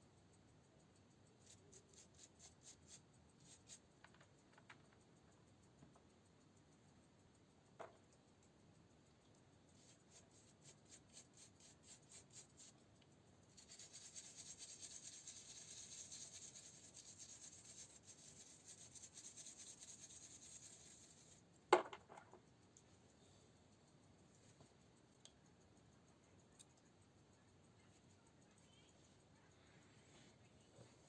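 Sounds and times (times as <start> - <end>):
hand rubbing on hard surface: 13.6 - 21.4.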